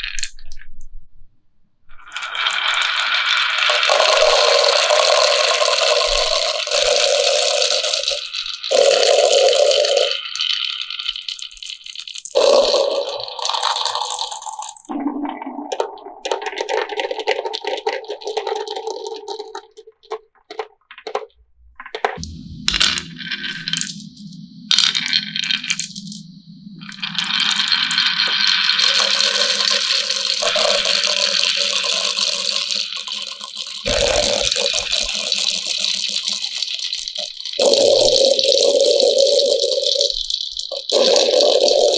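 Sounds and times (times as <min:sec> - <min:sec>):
marbles rolling and clattering: 0:02.1 - 0:41.9
low rumble: 0:22.2 - 0:28.8.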